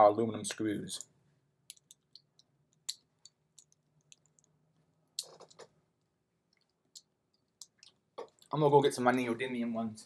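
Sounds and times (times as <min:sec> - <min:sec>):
small metal screws clicking: 0:01.7 - 0:04.6.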